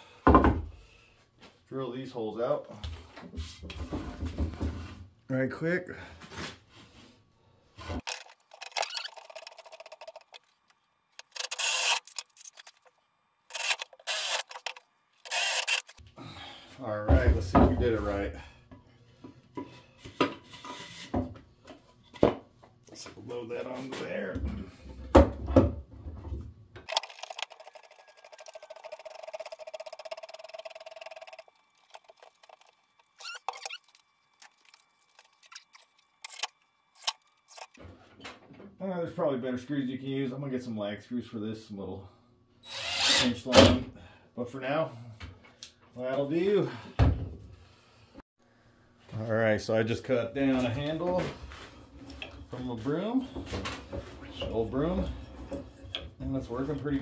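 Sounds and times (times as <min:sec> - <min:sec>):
clicks and clatters of handling: 0:08.0 - 0:12.9
power drill boring into wood: 0:11.2 - 0:12.3, 0:13.5 - 0:16.0, 0:42.6 - 0:43.3.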